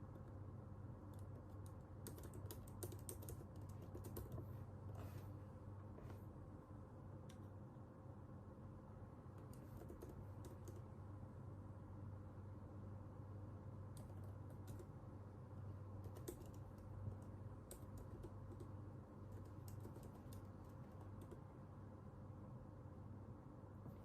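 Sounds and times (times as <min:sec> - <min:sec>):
keyboard typing: 0:01.0 - 0:04.5, 0:09.4 - 0:11.0, 0:13.9 - 0:15.0, 0:15.9 - 0:21.5.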